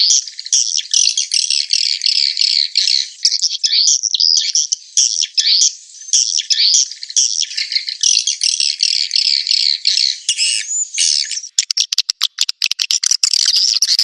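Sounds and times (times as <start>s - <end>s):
swiftlet chirps recording: 10.3s - 14.0s.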